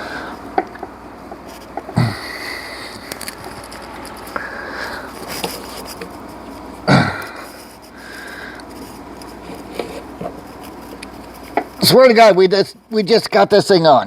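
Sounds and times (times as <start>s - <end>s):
man breathing with strain: 0.0s - 0.5s, 1.9s - 3.3s, 4.3s - 5.7s, 6.8s - 8.9s
man grunting: 2.0s - 2.6s, 6.9s - 7.5s.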